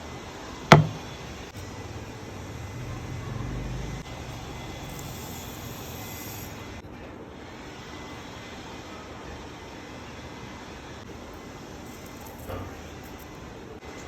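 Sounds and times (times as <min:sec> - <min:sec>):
sharp knock: 0:00.7 - 0:01.0.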